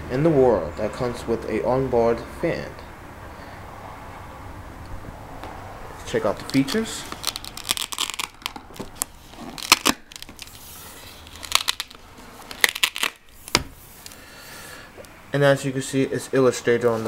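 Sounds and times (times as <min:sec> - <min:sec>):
cardboard box crinkling: 0:06.4 - 0:13.6.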